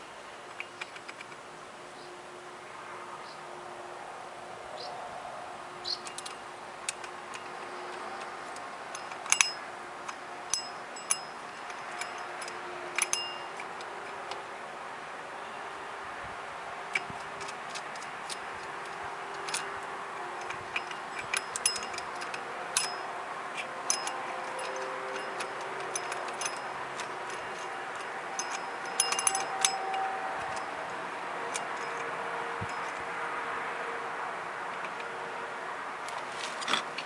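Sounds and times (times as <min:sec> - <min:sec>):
metallic ratchet clicks: 0:05.9 - 0:14.4, 0:20.4 - 0:30.7, 0:31.5 - 0:33.0.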